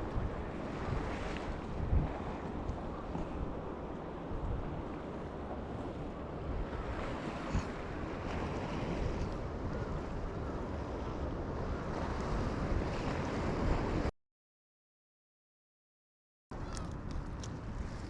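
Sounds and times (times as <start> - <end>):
sea waves: 0.0 - 14.1, 16.6 - 18.0
wind buffeting microphone: 0.0 - 14.1.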